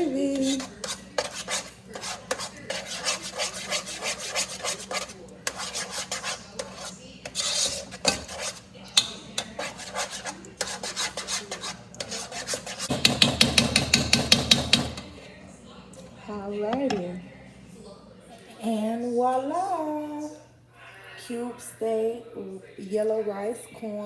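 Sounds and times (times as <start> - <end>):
utensil scraping a pan: 0.0 - 15.1.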